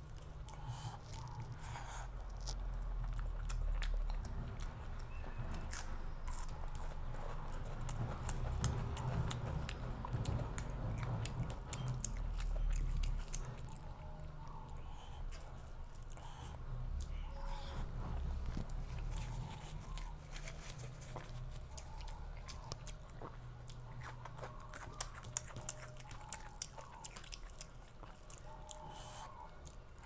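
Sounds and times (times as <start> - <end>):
person chewing food: 0.0 - 30.0
low rumble: 15.8 - 23.4.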